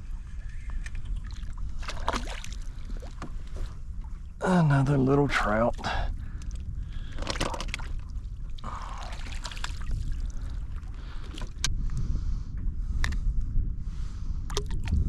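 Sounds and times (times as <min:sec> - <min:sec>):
wind rumbling on microphone: 0:00.0 - 0:15.0
water sloshing against kayak: 0:00.3 - 0:04.4, 0:05.4 - 0:11.7.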